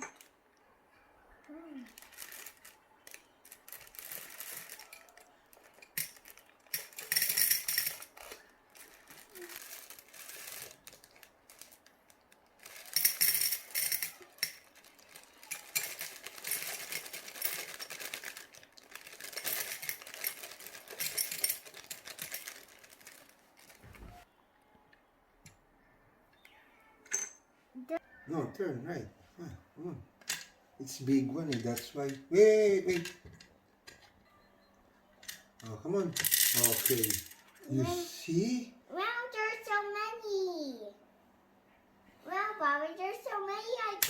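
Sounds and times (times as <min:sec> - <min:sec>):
candies clattering: 0:01.8 - 0:23.9, 0:36.2 - 0:37.6.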